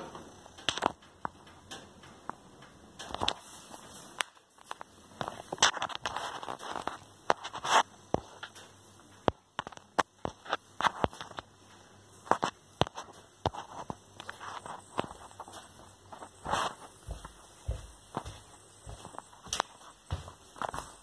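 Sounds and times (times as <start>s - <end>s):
wood fire crackling: 0.0s - 21.0s
sharp pops and snaps: 0.3s - 16.7s.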